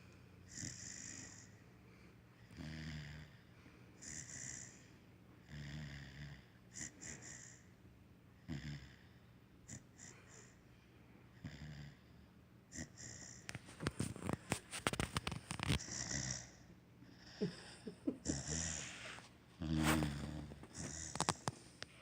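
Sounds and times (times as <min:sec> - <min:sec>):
puppy snoring: 0:00.4 - 0:01.7, 0:02.4 - 0:07.8, 0:08.4 - 0:10.6, 0:11.3 - 0:22.0.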